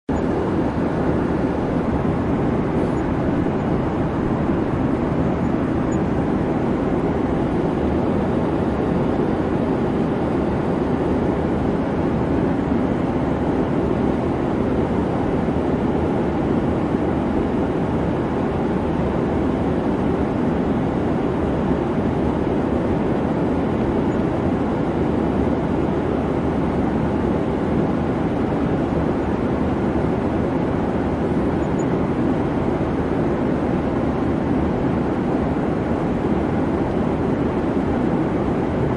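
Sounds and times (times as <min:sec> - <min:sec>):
jet engine and airflow rumble: 0:00.0 - 0:38.9.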